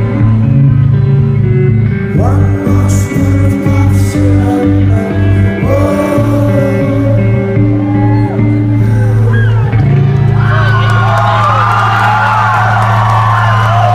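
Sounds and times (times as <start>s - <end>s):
sustained guitar tones: 0.0s - 10.8s
heavy repeating bass line: 0.0s - 11.6s
person singing: 2.1s - 10.0s.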